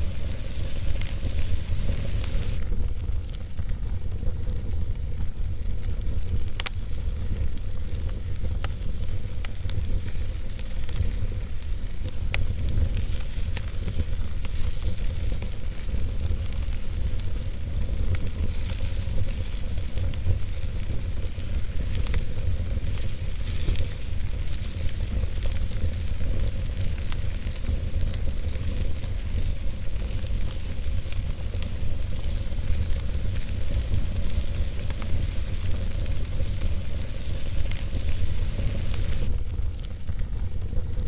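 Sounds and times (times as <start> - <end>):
fire crackling in a fireplace: 0.0 - 41.0.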